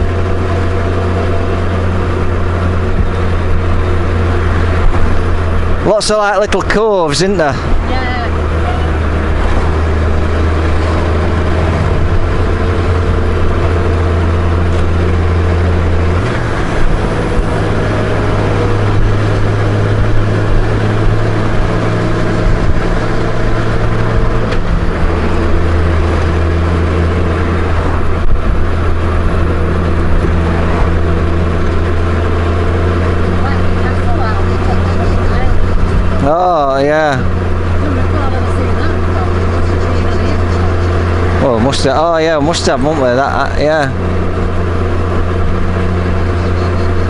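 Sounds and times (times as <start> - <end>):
motorcycle engine cruising: 0.0 - 47.0
road noise: 0.0 - 47.0
wind noise: 7.6 - 36.3.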